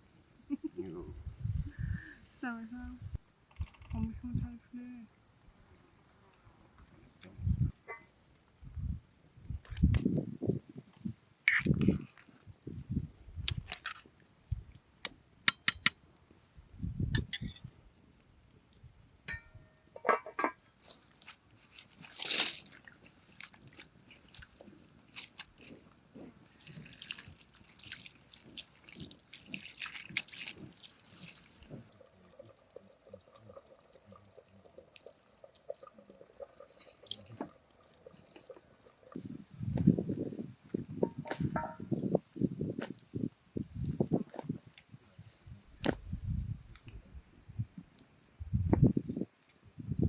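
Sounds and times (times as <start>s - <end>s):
water pouring and dripping: 18.5s - 50.0s.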